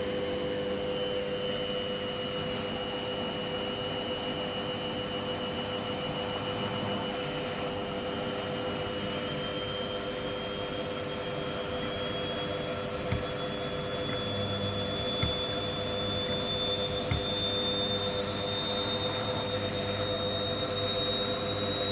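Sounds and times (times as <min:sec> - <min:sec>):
washing machine spin whine: 0:00.0 - 0:21.9
faint knocks: 0:11.7 - 0:17.5.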